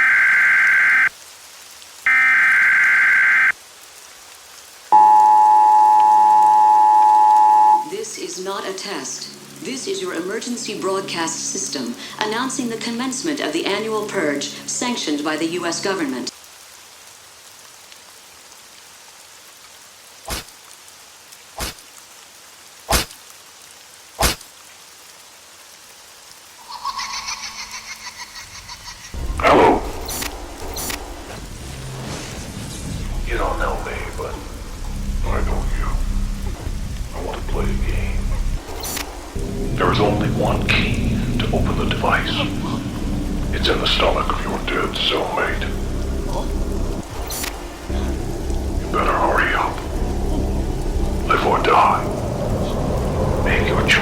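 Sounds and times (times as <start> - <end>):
faint rain: 0.0 - 54.0
two-note attention signal: 5.0 - 7.9.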